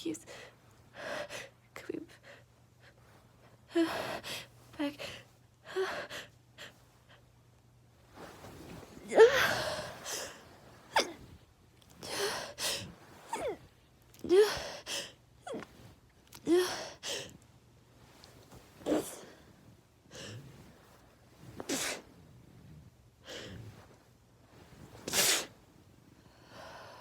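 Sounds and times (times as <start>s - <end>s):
woman sneezing: 25.1s - 25.5s.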